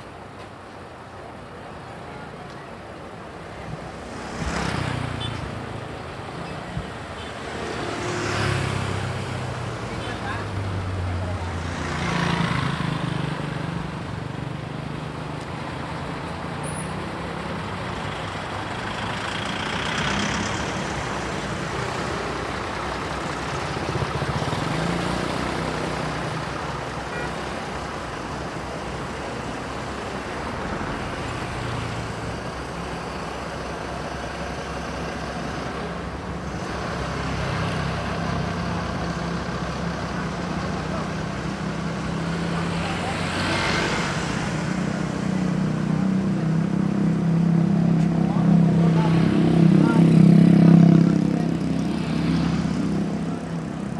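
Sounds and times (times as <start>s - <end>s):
bus diesel engines droning: 0.0s - 53.9s.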